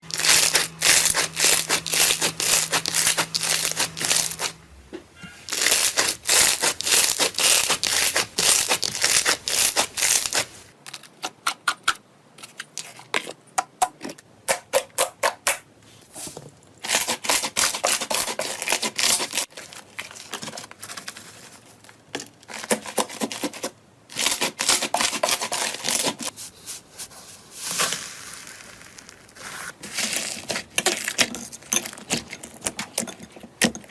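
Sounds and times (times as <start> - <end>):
slime squished crackling and popping: 0.1 - 4.5.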